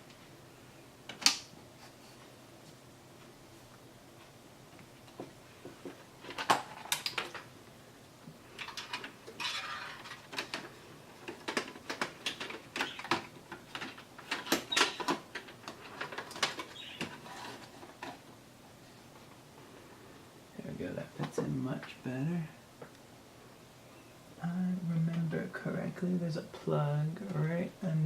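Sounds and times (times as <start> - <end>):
plastic and metal clicks and scraping: 8.6 - 18.2.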